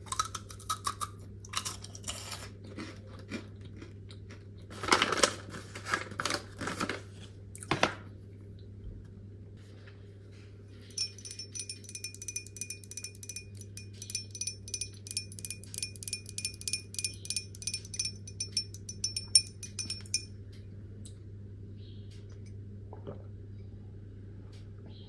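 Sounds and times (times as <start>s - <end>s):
low steady hum: 0.0s - 25.0s
spoon clinking against dish: 10.9s - 20.3s.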